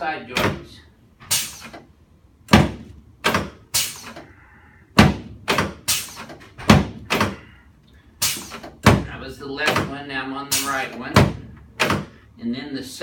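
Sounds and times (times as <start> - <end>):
sharp knocks from chiropractic adjustment: 2.5 - 3.6, 5.0 - 7.4.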